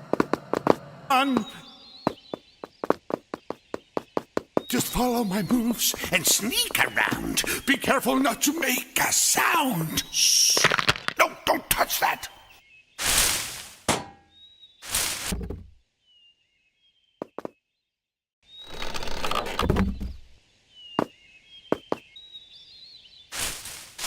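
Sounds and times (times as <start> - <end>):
high bird-like chirps: 1.1 - 8.8
knocks and thuds: 13.8 - 14.2, 15.2 - 15.8.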